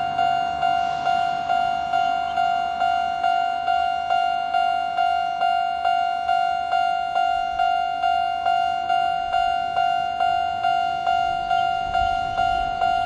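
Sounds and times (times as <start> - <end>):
level crossing alarm bell: 0.0 - 13.0.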